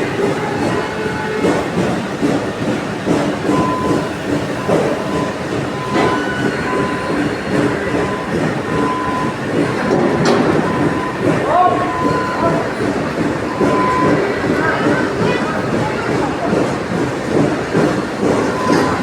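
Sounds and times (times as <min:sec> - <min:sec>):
heavy machinery running: 0:00.0 - 0:19.0.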